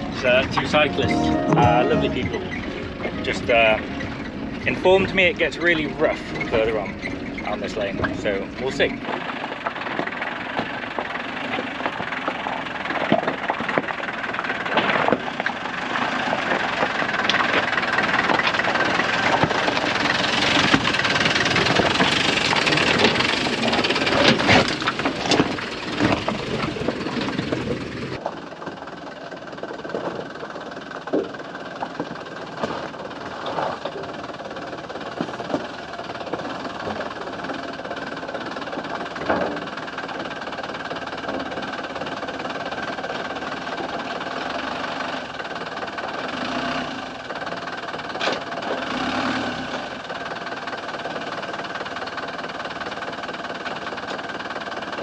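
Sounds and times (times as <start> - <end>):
body and suspension rattling: 0.0 - 55.0
vehicle engine running: 0.0 - 55.0
sharp knocks and clatters: 6.4 - 44.6.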